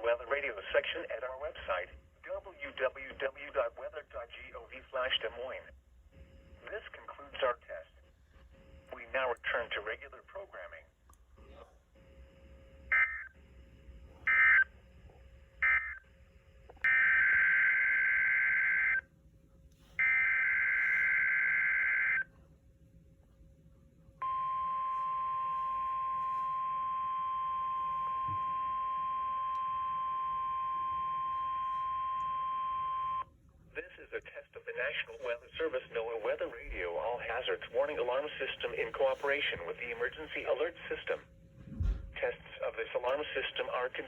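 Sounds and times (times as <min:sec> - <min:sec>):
steady warning alarm tone: 0:06.1 - 0:09.9, 0:11.9 - 0:19.1, 0:19.8 - 0:22.4, 0:24.2 - 0:33.4.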